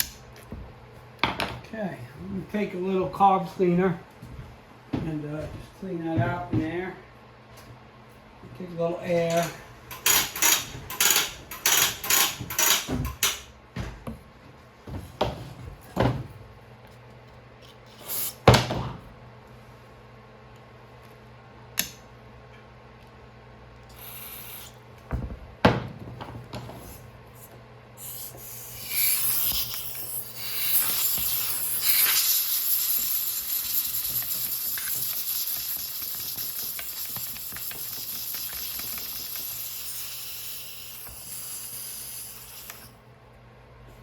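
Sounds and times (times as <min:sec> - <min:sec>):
spray hissing: 0:23.9 - 0:24.8, 0:28.0 - 0:42.9.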